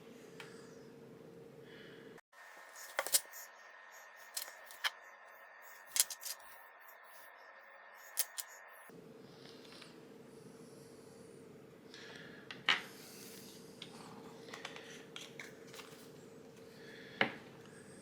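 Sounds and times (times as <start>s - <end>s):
small sharp clicks and snips: 8.1s - 8.6s.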